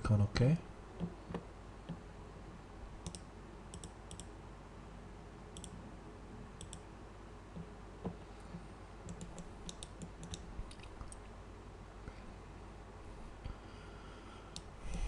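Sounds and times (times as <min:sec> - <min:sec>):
faint background noise: 0:00.0 - 0:15.0
computer mouse clicking: 0:03.0 - 0:04.3, 0:05.6 - 0:05.8, 0:06.6 - 0:06.8, 0:09.1 - 0:11.2.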